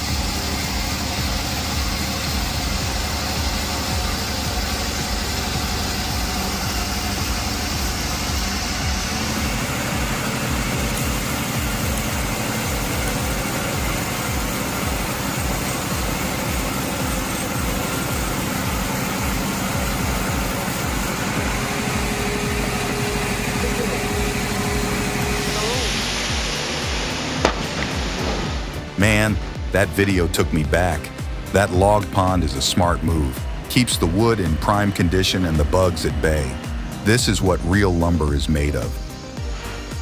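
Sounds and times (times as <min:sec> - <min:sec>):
heavy engine running: 0:00.0 - 0:40.0.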